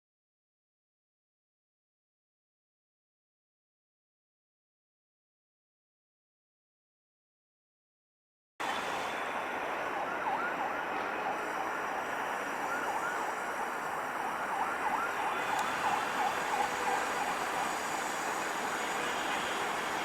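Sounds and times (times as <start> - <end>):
outdoor ambient noise: 8.6 - 20.0.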